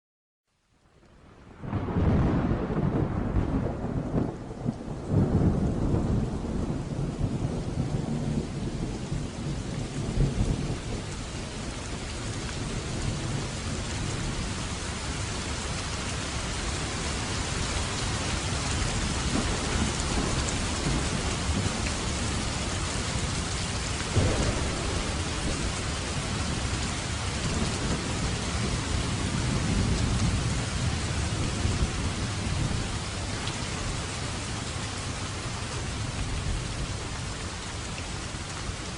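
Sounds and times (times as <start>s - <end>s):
heavy rain: 0.5s - 38.9s
rolling thunder: 1.5s - 11.6s, 16.8s - 33.1s.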